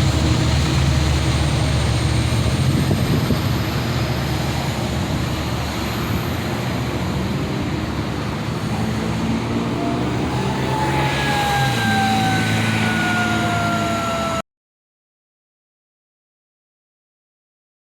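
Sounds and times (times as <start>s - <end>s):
diesel locomotive engine running: 0.0s - 14.4s.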